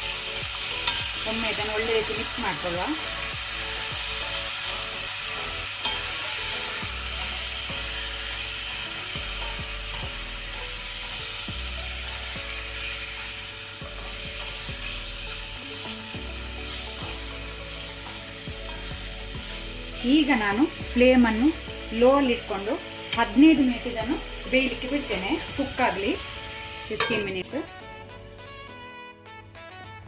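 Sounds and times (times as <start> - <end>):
wings sizzling in hot oil: 0.0 - 28.8
spoon knocking pan: 5.8 - 8.2, 26.9 - 27.5.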